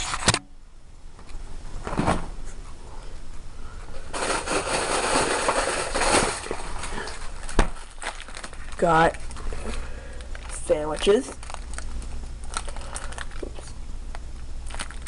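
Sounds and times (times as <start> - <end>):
rustling and clatter: 1.8 - 2.8, 3.9 - 10.6.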